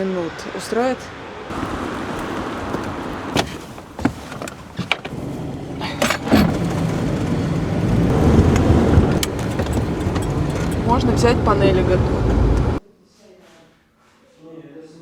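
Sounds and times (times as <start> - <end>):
car engine and road rumble: 1.5 - 12.8.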